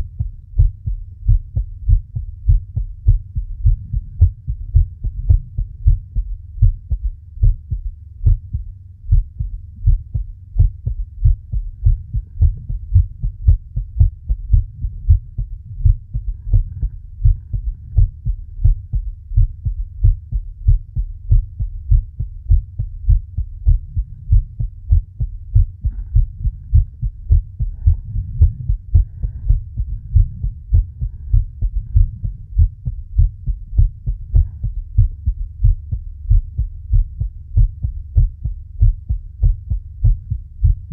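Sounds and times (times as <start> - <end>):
heartbeat thumps: 0.0 - 40.9.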